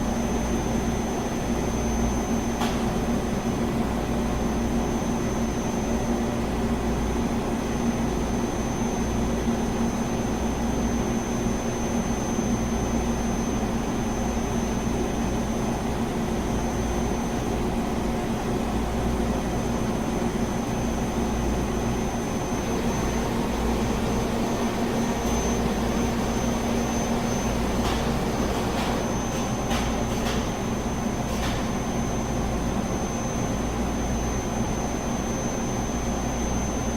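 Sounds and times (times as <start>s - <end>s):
machine hum and low rumble: 0.0s - 36.9s
high constant whine: 20.7s - 29.4s.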